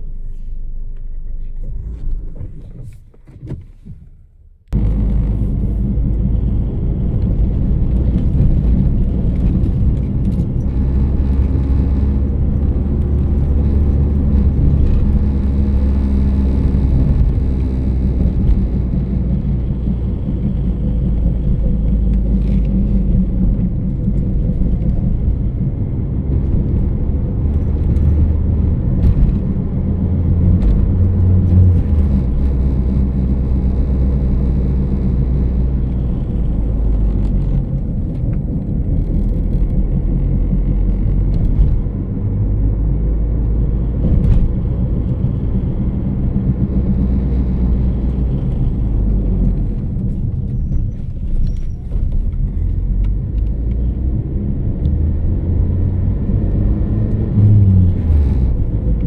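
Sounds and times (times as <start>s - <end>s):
low humming rumble: 0.0s - 59.0s.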